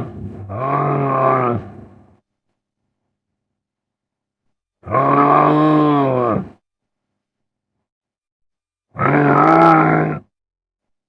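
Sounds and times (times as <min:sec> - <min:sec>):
low creature call: 0:00.0 - 0:01.8, 0:08.9 - 0:10.3.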